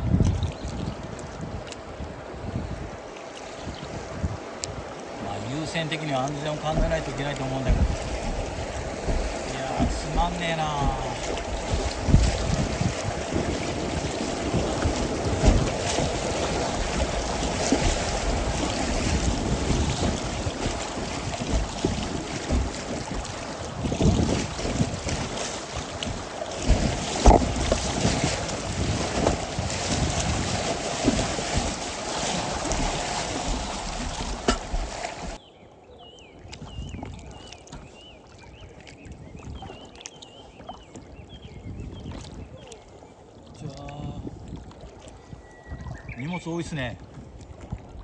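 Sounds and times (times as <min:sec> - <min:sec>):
wind buffeting microphone: 0:00.0 - 0:48.0
river water rushing: 0:04.4 - 0:35.4
brief knocks: 0:34.1 - 0:35.0.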